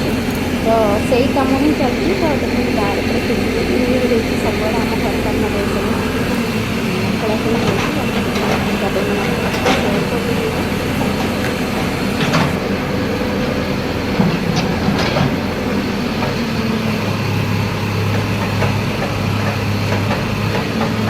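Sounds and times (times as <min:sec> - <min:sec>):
low steady hum: 0:00.0 - 0:15.4
engine rumble: 0:00.0 - 0:21.0.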